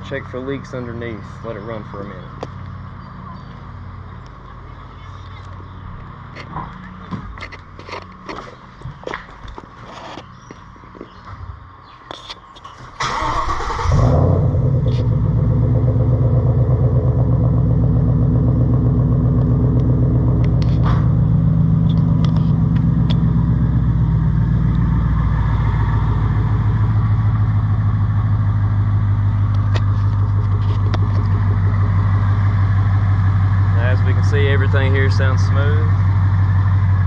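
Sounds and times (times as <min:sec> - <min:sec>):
car engine idling: 0:13.0 - 0:37.0.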